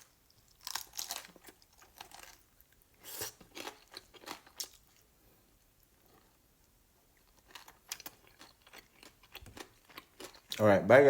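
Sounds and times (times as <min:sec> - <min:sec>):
crunching fried chicken: 0:00.0 - 0:05.1, 0:07.2 - 0:10.7.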